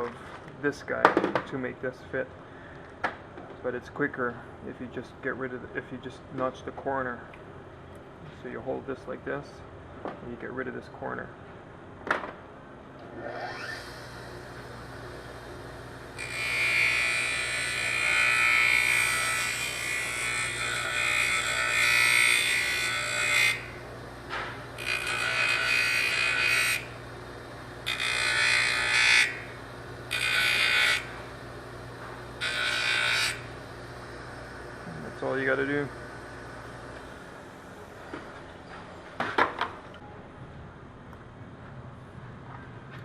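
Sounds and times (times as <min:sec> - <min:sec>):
rotary tool motor running: 0:13.2 - 0:27.1.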